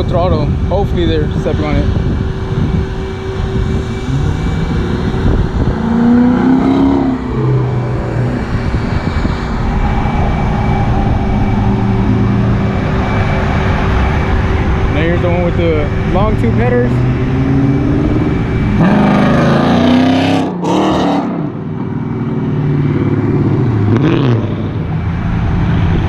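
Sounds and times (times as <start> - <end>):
car passing at full throttle: 0.4 - 26.0.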